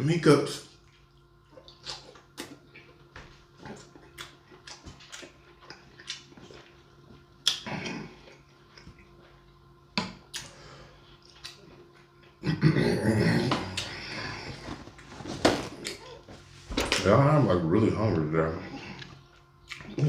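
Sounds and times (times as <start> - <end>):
chewing and mouth smacks: 0.8 - 9.6, 11.2 - 12.4, 19.0 - 20.0.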